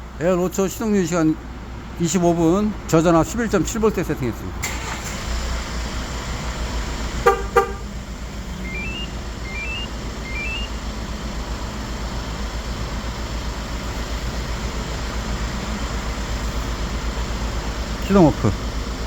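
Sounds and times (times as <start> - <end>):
van engine idling: 0.0 - 19.0
short horn toots: 7.2 - 7.9
rising electronic beep chimes: 8.6 - 10.7.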